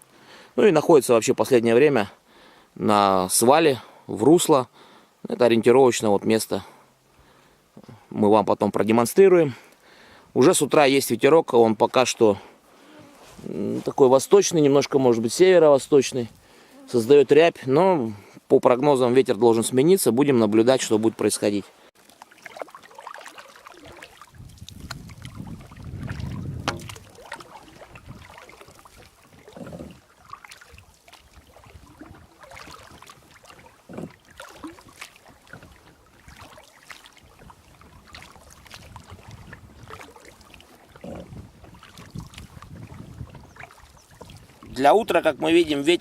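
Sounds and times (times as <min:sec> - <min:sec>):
water lapping: 0:09.5 - 0:10.8, 0:12.0 - 0:18.5, 0:19.6 - 0:46.0
wind gusting over microphone: 0:24.3 - 0:28.4, 0:38.8 - 0:40.0, 0:41.0 - 0:43.6
knocks against boat hull: 0:26.6 - 0:27.0.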